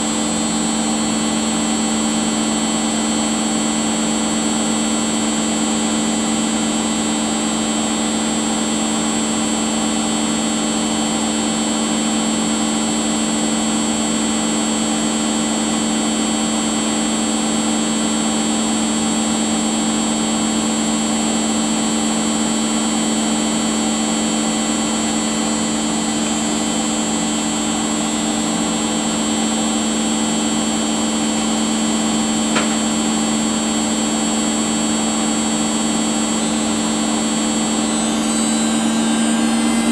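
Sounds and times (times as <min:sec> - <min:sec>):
appliance motor humming and whining: 0:00.0 - 0:39.9
short click: 0:32.5 - 0:32.8.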